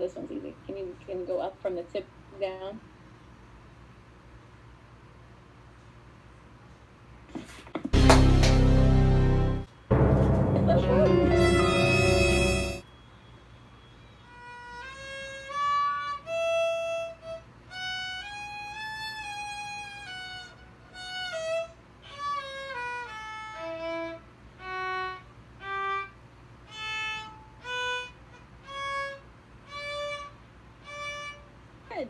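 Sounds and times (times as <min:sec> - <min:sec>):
violin played slowly: 0:08.0 - 0:12.8, 0:14.3 - 0:31.5.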